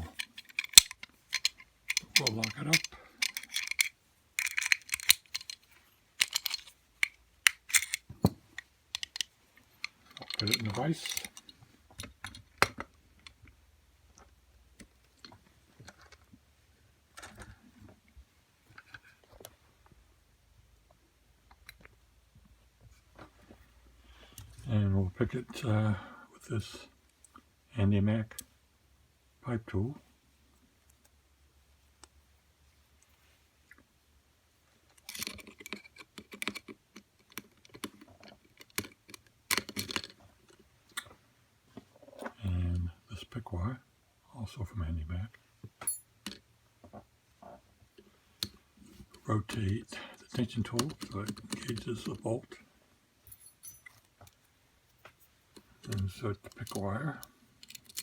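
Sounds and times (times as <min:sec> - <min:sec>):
padlock clicks and knocks: 0:00.0 - 0:05.6, 0:06.2 - 0:08.4
lock-picking tools clicking: 0:00.0 - 0:13.4, 0:35.0 - 0:41.1, 0:50.4 - 0:52.3, 0:55.6 - 0:58.0.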